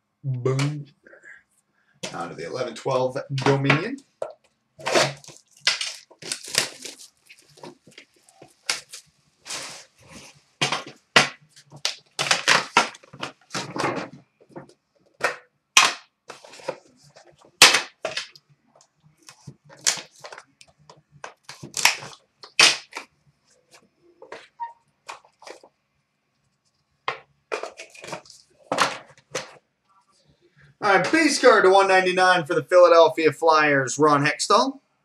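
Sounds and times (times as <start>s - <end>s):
wrapper and cardboard ripping: 4.8s - 13.8s, 19.3s - 20.5s, 21.2s - 23.1s.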